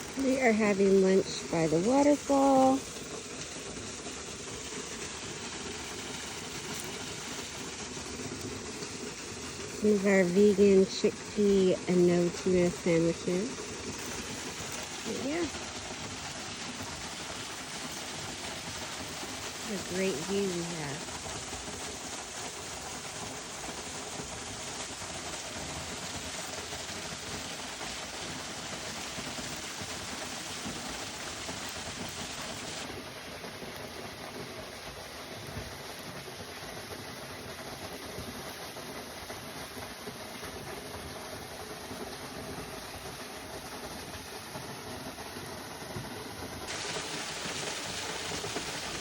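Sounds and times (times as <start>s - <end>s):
waterfall rushing: 0.0s - 33.0s, 46.7s - 49.0s.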